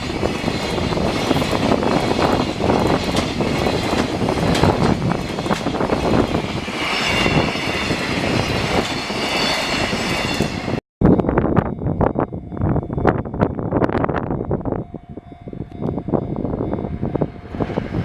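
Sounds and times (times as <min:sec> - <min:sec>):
train wheels clattering over rail joints: 0:00.0 - 0:10.3
high squeal of train wheels: 0:00.0 - 0:10.8.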